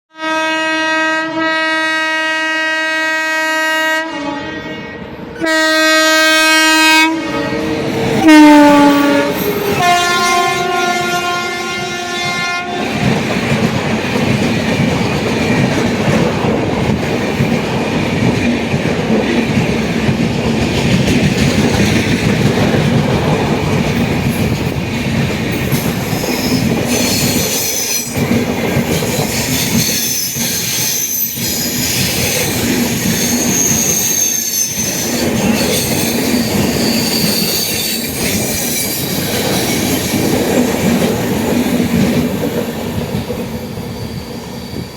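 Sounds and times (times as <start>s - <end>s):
train horn blasts: 0.1s - 13.1s
train coaches clattering over rails: 7.6s - 44.9s
wheels squealing: 29.2s - 40.4s.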